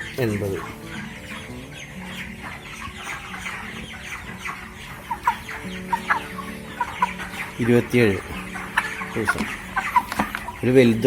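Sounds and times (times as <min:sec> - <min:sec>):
sharp chicken calls: 0:00.0 - 0:10.8
chickens clucking and peeping: 0:00.0 - 0:11.0.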